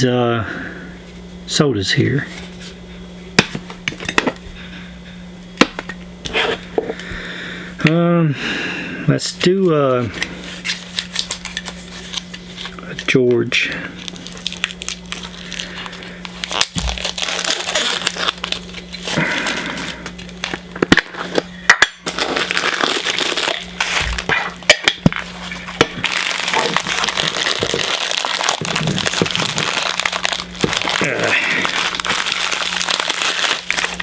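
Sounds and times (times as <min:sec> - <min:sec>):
plastic packaging crinkling: 0:09.6 - 0:13.2, 0:13.9 - 0:34.0.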